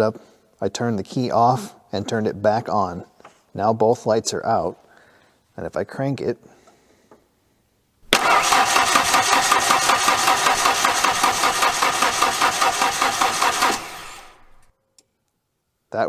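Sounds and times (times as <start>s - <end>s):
engine cranking on starter motor: 8.1s - 14.7s.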